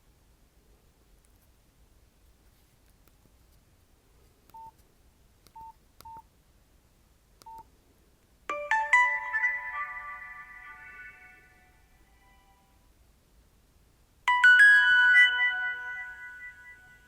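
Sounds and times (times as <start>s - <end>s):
phone keypad beeps: 4.5s - 4.7s, 7.4s - 7.6s
polyphonic ringtone: 8.5s - 11.6s, 14.3s - 17.0s.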